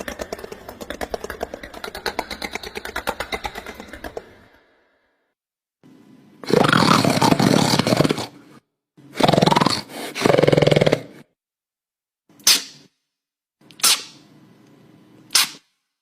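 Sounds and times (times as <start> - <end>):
monster growling roars: 6.4 - 8.4.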